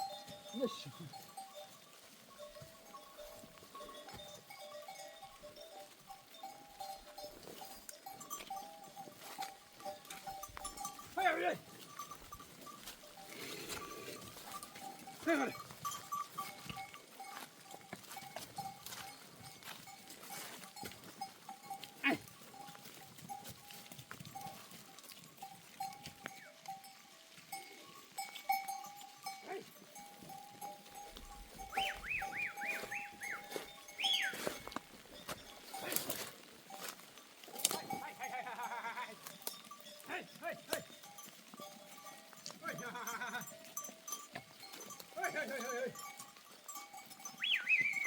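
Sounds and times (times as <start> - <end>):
goat bells clinking: 0.0 - 48.0
wavering whistle: 31.7 - 33.4, 34.0 - 34.4, 47.4 - 48.0
goats bleating: 37.5 - 41.0, 42.1 - 43.8, 44.7 - 46.2.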